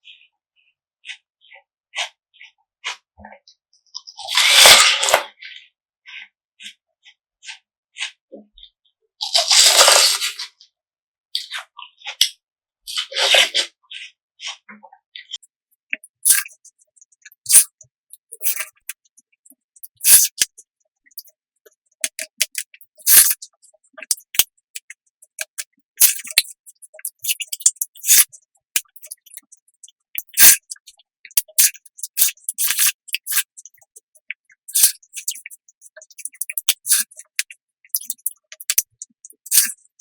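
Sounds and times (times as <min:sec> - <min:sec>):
crisp wet chewing: 0:04.0 - 0:05.2, 0:09.2 - 0:10.4, 0:15.3 - 0:19.1, 0:22.0 - 0:34.1, 0:34.7 - 0:39.8
utensil scraping a bowl: 0:17.4 - 0:19.0, 0:19.8 - 0:20.5, 0:22.0 - 0:23.4, 0:24.0 - 0:29.5, 0:30.2 - 0:30.8, 0:31.4 - 0:33.7, 0:34.7 - 0:39.8.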